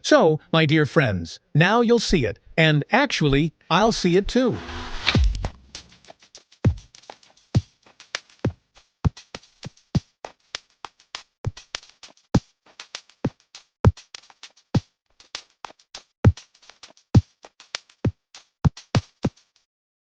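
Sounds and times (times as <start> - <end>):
drum machine beat: 3.3 - 5.9, 6.6 - 7.0, 7.6 - 9.4, 11.5 - 14.2.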